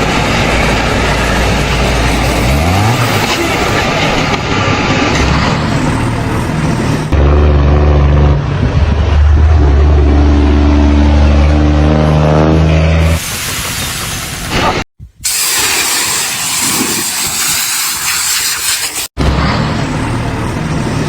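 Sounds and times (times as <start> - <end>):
loud engine running: 0.0 - 14.8, 19.2 - 21.0.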